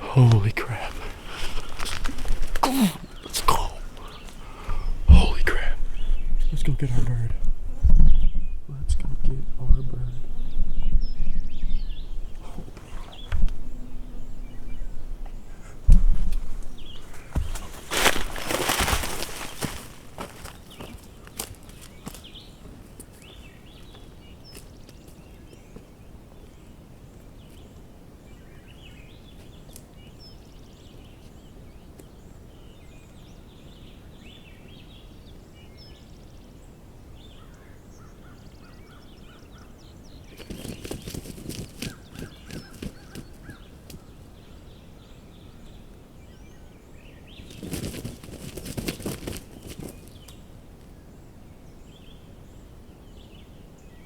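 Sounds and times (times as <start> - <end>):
songbirds chirping: 0.0 - 54.0
rustling and thrashing in dry leaves: 0.9 - 3.2, 17.0 - 21.0, 40.4 - 43.2, 47.4 - 50.2.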